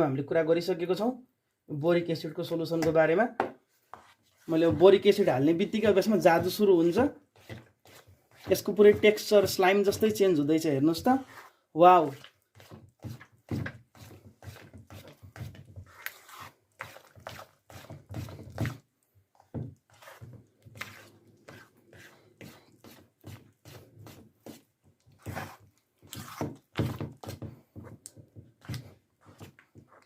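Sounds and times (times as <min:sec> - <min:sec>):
slime squelching: 0:11.1 - 0:27.4.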